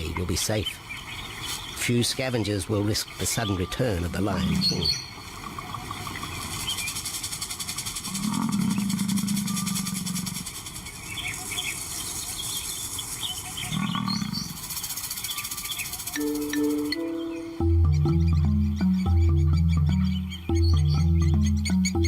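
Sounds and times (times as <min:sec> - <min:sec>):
birds chirping: 0:00.0 - 0:22.0
lion growling low: 0:08.1 - 0:10.5, 0:13.7 - 0:14.6.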